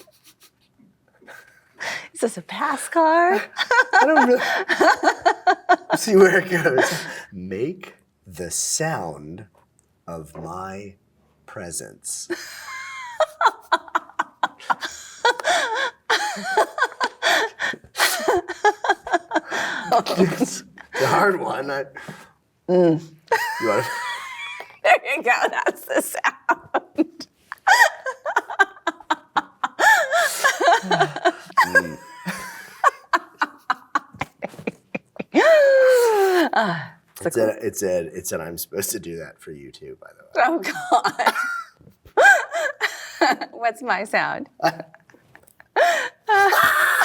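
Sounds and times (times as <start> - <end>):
people laughing and giggling: 3.3 - 7.2, 12.3 - 21.4, 23.3 - 36.7, 40.4 - 43.6, 44.6 - 47.0
low chuckle: 26.6 - 35.8.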